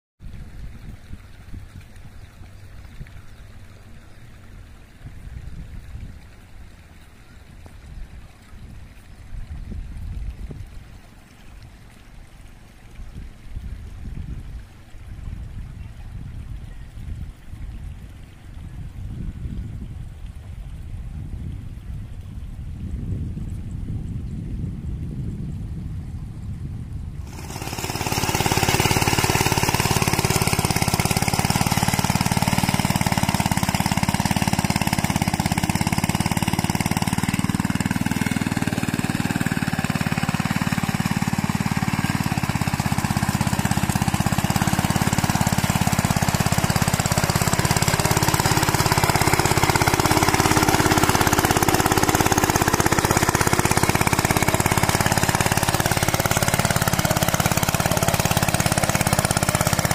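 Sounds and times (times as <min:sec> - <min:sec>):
diesel engine chugging: 0:27.2 - 0:59.9.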